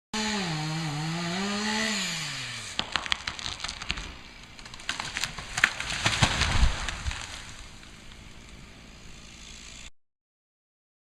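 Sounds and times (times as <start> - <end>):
chainsaw running: 0.2 - 9.9
wood cracking and snapping: 2.8 - 8.2.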